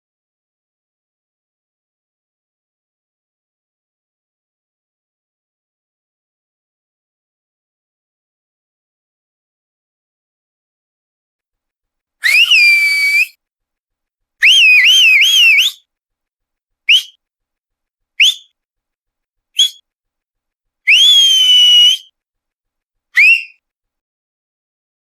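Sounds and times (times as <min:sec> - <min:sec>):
person whistling: 0:12.2 - 0:13.3, 0:14.4 - 0:15.8, 0:16.9 - 0:17.2, 0:18.2 - 0:18.5, 0:19.6 - 0:19.8, 0:20.9 - 0:22.1, 0:23.2 - 0:23.6.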